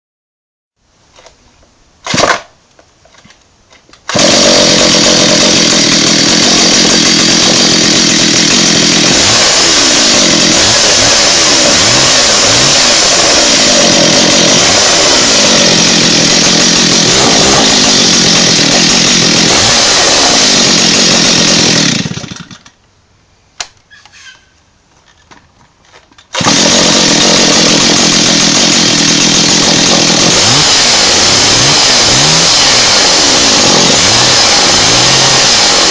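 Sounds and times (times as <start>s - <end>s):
chainsaw running at high speed: 4.1s - 22.6s, 26.4s - 35.9s
sharp click: 23.6s - 24.2s.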